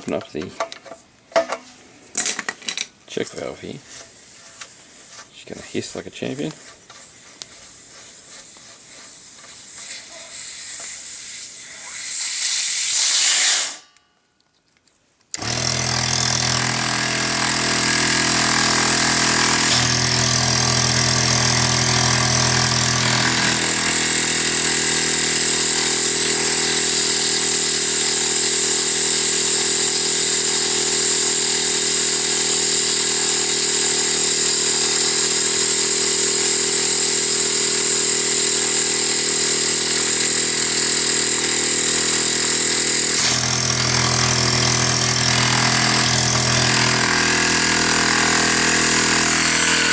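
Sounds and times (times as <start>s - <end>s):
compressed air hissing: 4.0s - 13.8s
air compressor motor humming: 15.4s - 49.9s.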